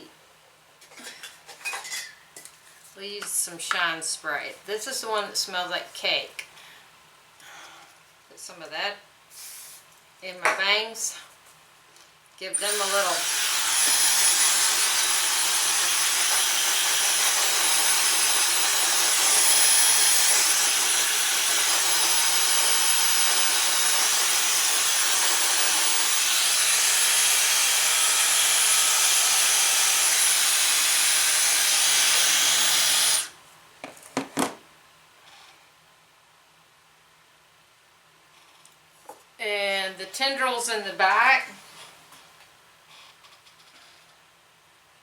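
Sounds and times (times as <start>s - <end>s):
hair dryer blowing: 12.7s - 33.3s.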